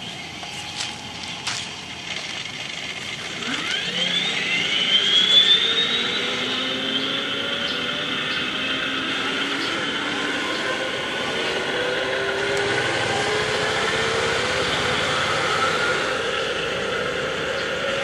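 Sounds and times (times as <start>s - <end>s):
turbine whine through small speaker: 0.0s - 18.0s.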